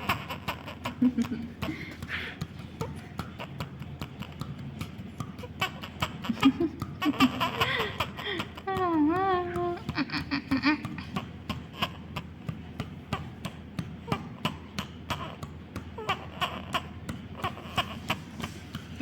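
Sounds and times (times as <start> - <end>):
baby cooing: 0.0 - 1.0, 7.0 - 12.5, 13.1 - 18.6
baby giggling: 0.0 - 18.6
hand patting baby: 1.1 - 19.0.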